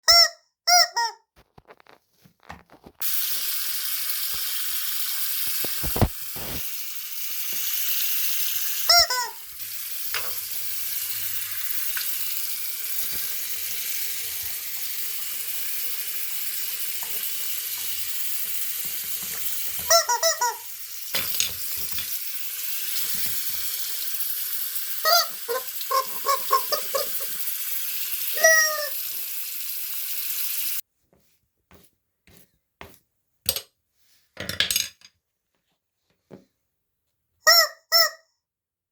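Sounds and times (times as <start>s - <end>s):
rubber chicken toy squeaking: 0.0s - 1.3s, 8.9s - 9.4s, 19.8s - 20.6s, 25.0s - 27.3s, 28.3s - 29.0s, 37.4s - 38.3s
running tap water: 3.0s - 30.8s.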